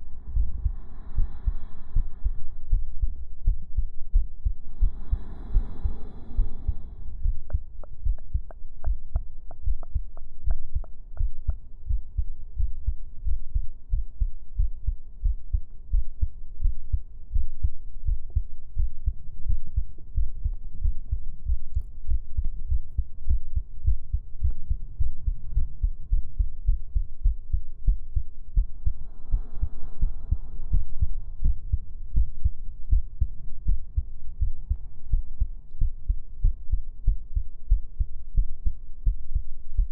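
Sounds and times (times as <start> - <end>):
amplified fast heartbeat: 0.0 - 39.9
faint steady hum: 0.0 - 39.9.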